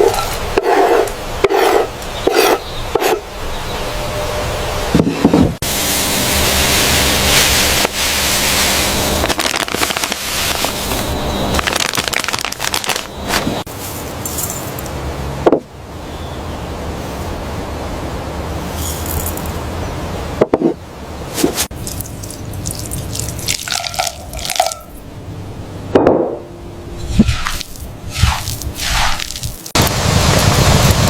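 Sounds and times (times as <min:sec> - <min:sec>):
food deep-frying in oil: 0:05.6 - 0:13.7, 0:21.6 - 0:25.0, 0:27.0 - 0:31.0.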